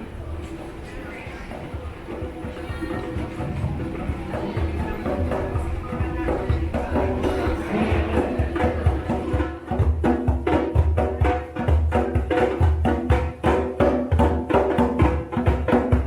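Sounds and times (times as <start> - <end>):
plucked or struck percussion: 0.4 - 16.0.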